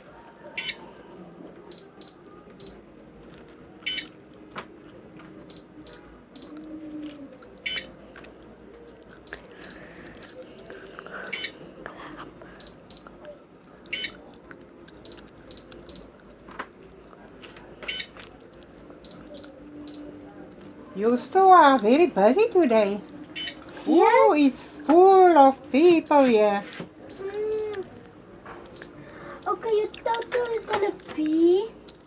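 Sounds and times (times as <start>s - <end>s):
toy cash register beeps: 0.6s - 0.8s, 3.8s - 4.1s, 7.6s - 7.9s, 13.9s - 14.2s, 17.8s - 18.2s, 23.4s - 23.6s.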